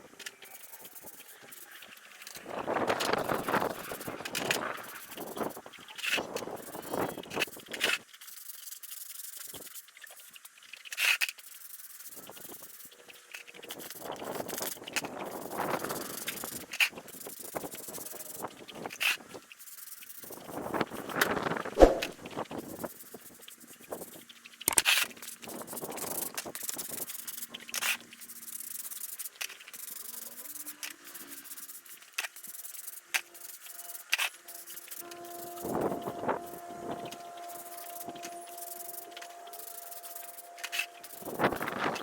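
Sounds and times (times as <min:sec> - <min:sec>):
rough rubbing on a hard surface: 0:21.5 - 0:22.2
stiff brush scraping on paving: 0:21.6 - 0:22.2
faint steady hum: 0:33.2 - 0:42.0.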